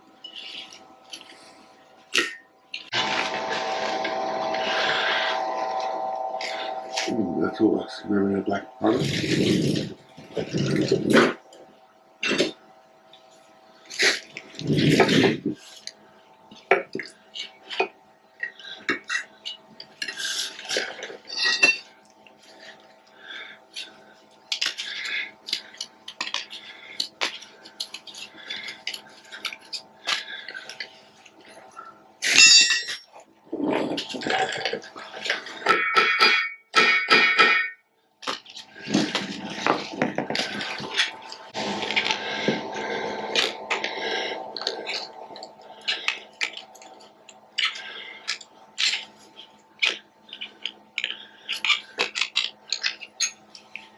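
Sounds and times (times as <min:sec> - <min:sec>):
faint steady hum: 0:00.0 - 0:53.9
metal tools clanking together: 0:21.3 - 0:21.8, 0:32.3 - 0:33.1.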